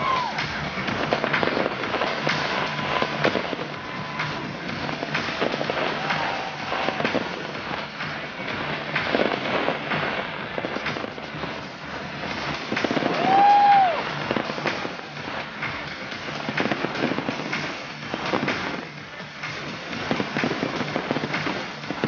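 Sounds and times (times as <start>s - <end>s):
whistling firework tone: 0.0s - 8.3s, 12.8s - 15.3s
fireworks crackling bangs: 0.0s - 22.0s.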